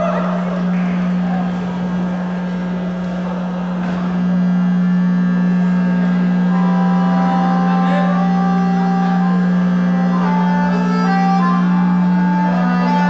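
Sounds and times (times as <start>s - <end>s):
sustained music chord: 4.4s - 13.0s.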